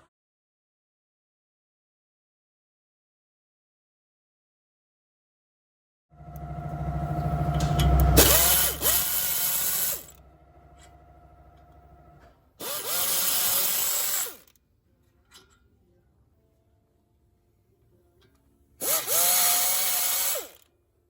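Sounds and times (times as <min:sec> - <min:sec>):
power tool running: 0:06.2 - 0:14.5, 0:18.8 - 0:20.6.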